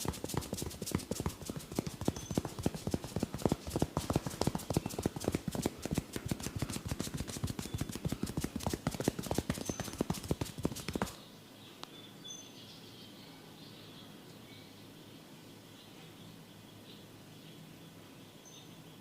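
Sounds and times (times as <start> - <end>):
percussive massage tapping: 0.0 - 11.2
faint bird chirps: 2.1 - 2.6, 9.6 - 10.0, 11.1 - 19.0.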